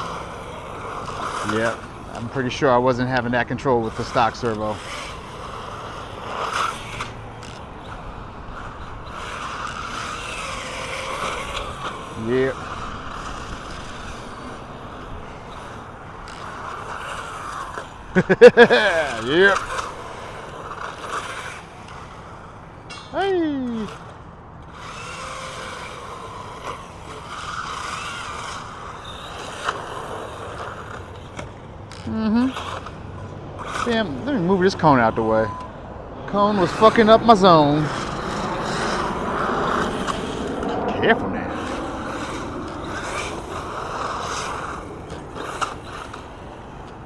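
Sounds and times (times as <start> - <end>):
faint motor whine: 0.0 - 47.0
electric toy car motor hiss: 3.8 - 22.5, 24.7 - 32.9, 36.6 - 40.4, 41.6 - 46.6.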